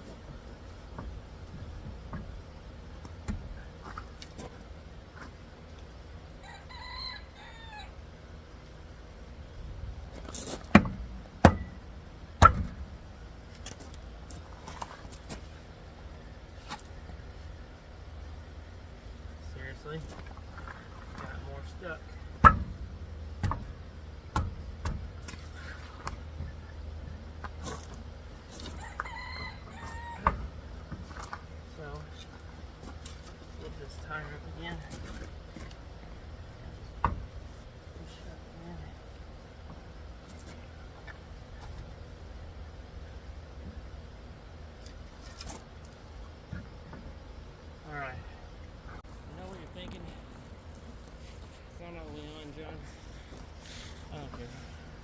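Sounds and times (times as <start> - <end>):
rooster crowing: 6.4 - 8.0, 28.6 - 30.6.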